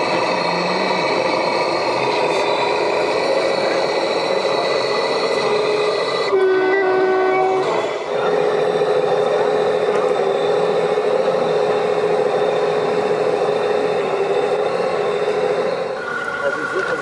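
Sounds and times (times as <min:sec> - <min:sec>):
simulated diesel engine running: 0:00.0 - 0:17.0
toy truck air horn blasts: 0:06.3 - 0:08.0.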